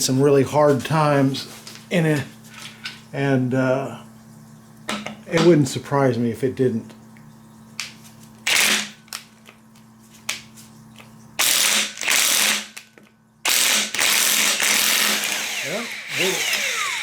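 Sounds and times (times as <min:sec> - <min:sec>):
impact wrench hammering: 0:13.5 - 0:17.0.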